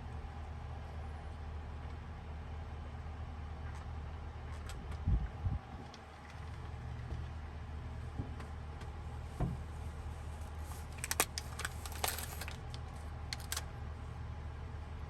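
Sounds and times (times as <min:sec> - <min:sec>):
metallic clinks and jingles: 0:11.0 - 0:12.6.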